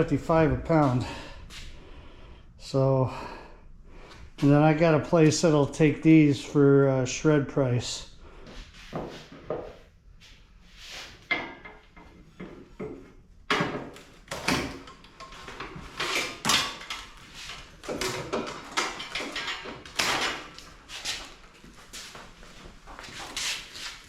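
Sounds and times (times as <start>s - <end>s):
scrap metal clanking and scraping: 11.2s - 21.5s.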